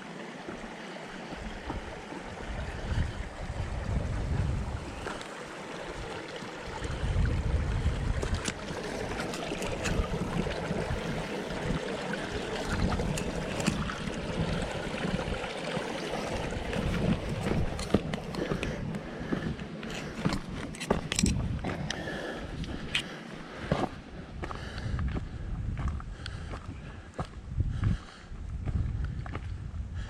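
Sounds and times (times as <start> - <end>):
footsteps crunching on trail: 0.4 - 3.2, 15.8 - 29.7
wind buffeting microphone: 1.3 - 30.0.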